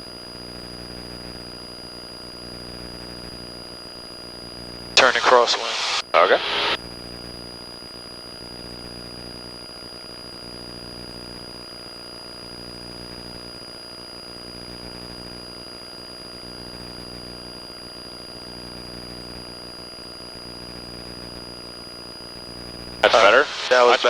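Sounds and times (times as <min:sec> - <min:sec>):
steady high whine: 0:05.0 - 0:06.8, 0:23.0 - 0:24.0.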